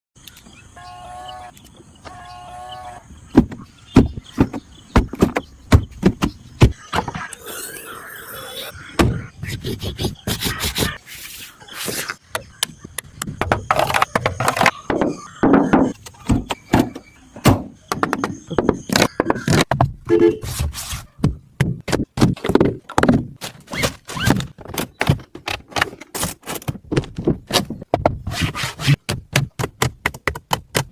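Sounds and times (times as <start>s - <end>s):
sharp clicks and knocks: 29.0s - 30.9s.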